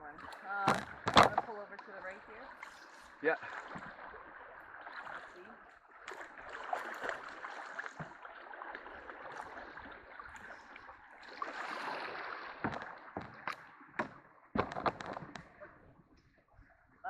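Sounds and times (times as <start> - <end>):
paddle splashing: 0.0 - 17.0
sharp knocks: 0.6 - 1.6, 12.7 - 15.6.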